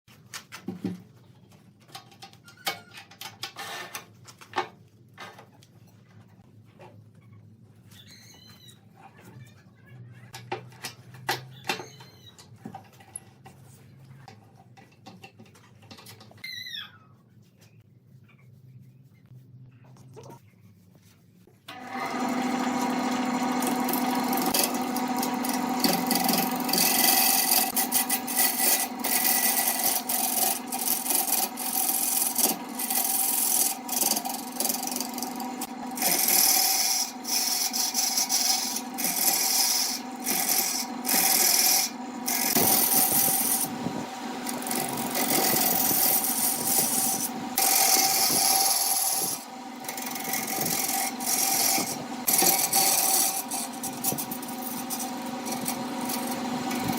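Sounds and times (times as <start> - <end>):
turning tool cutting wood: 21.7 - 56.9
wood lathe motor hum: 21.7 - 56.9.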